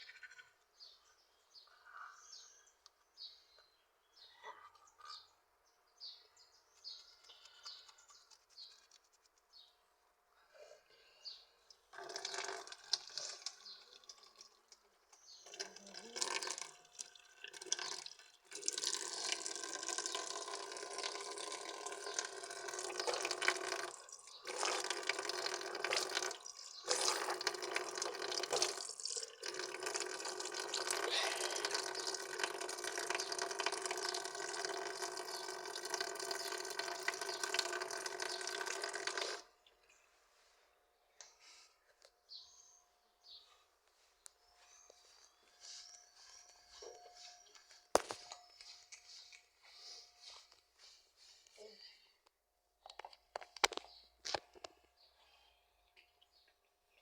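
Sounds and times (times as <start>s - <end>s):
tap water running into a sink: 12.0s - 14.5s, 15.4s - 39.5s.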